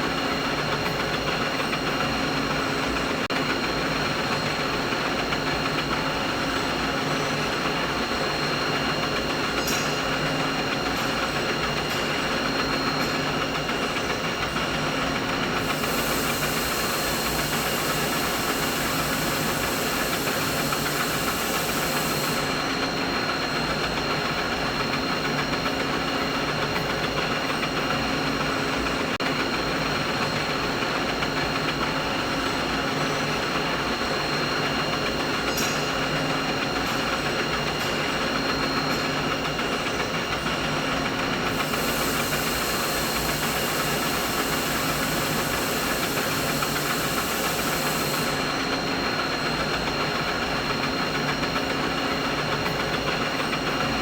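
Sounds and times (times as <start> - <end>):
mechanical hum and hiss: 0.0 - 54.0
high hiss: 15.6 - 22.6, 41.5 - 48.5.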